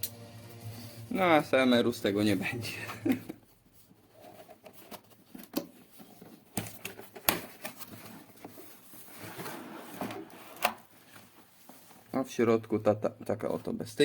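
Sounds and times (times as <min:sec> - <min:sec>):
packaging rustling and sliding: 0:03.6 - 0:12.1.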